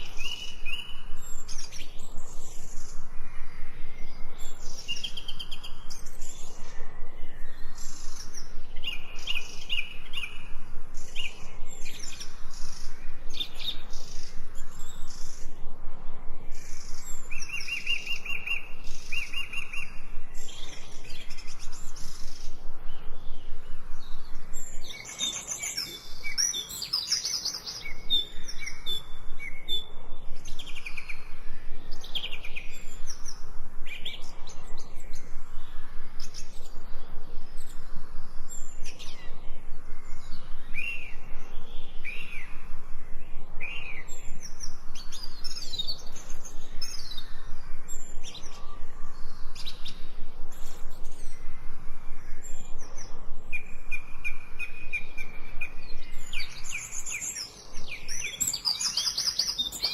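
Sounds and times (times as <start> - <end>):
birds chirping: 16.4 - 59.9
downward-sweeping bird whistles: 16.5 - 23.4.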